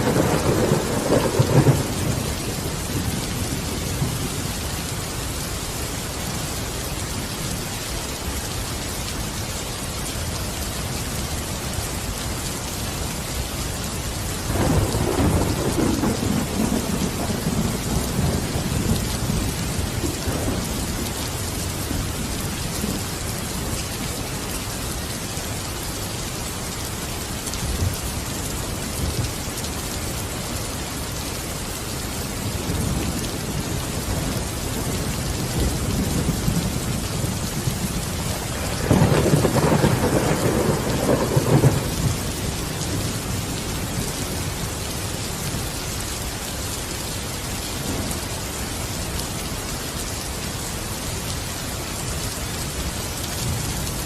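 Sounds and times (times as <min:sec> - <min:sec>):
thunder rumbling: 0:00.0 - 0:04.4, 0:14.5 - 0:23.8, 0:32.6 - 0:44.2
heavy rain: 0:00.0 - 0:54.0.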